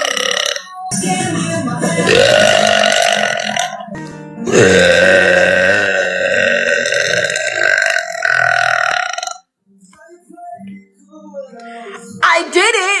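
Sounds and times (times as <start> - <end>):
girl burping: 0.0 - 0.7, 2.0 - 3.8, 4.4 - 9.4.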